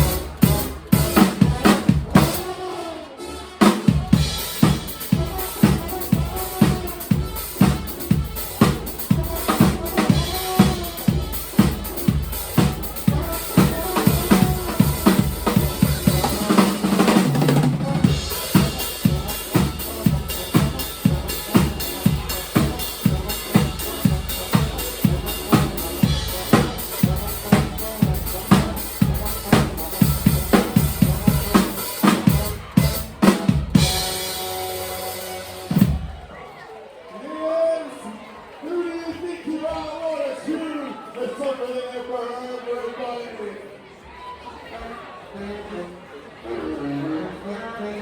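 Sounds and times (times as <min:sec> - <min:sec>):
drum kit beat: 0:00.0 - 0:02.8, 0:03.6 - 0:36.3
live band playing: 0:00.0 - 0:36.4.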